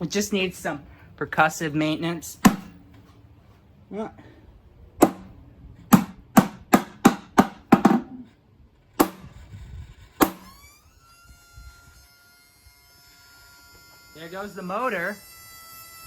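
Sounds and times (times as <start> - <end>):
motor whine: 9.7 - 16.0.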